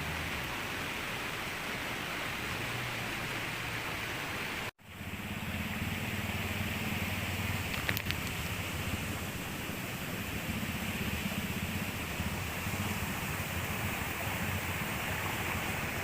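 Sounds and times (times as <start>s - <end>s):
river rushing: 0.0s - 16.0s
light clicks: 7.6s - 8.4s.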